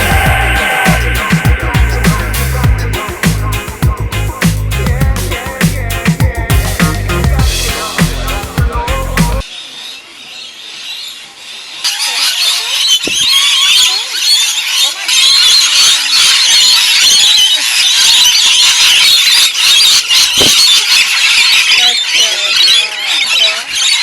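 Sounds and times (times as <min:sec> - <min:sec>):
parrots screeching and chattering: 0:00.0 - 0:04.3, 0:09.5 - 0:24.0.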